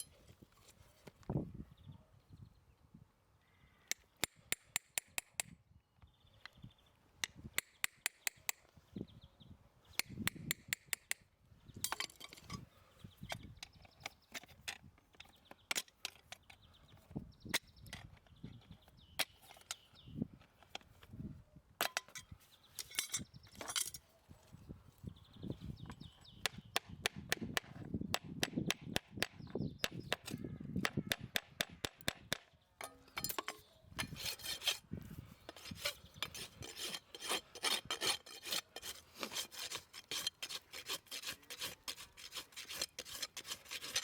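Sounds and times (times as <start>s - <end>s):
metal tools scraping hoof: 32.8s - 34.9s, 35.5s - 44.0s.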